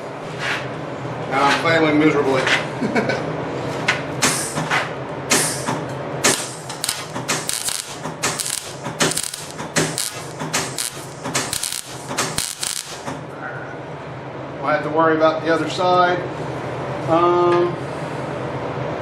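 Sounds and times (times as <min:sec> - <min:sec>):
steady electrical hum: 0:05.1 - 0:18.4
arc welder crackling: 0:06.2 - 0:13.2.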